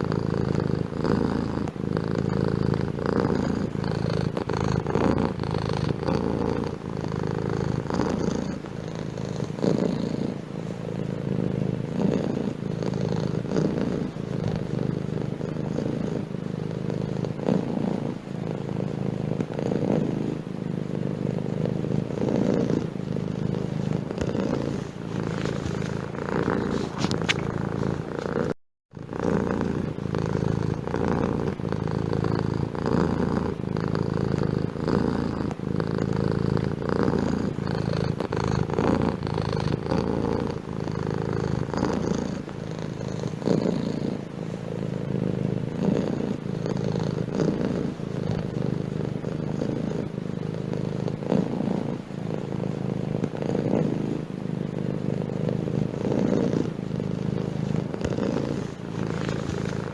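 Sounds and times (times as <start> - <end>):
cat purring: 0.0 - 59.9.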